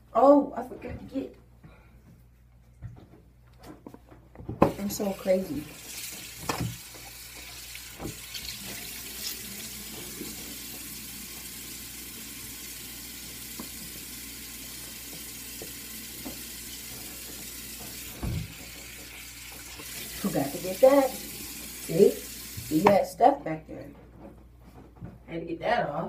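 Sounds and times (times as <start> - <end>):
tap water running: 4.6 - 23.1.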